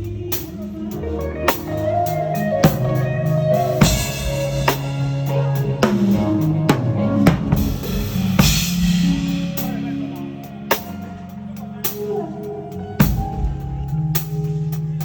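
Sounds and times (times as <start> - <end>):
held bass and guitar notes: 0.0 - 15.0
drum kit hits: 3.8 - 9.9.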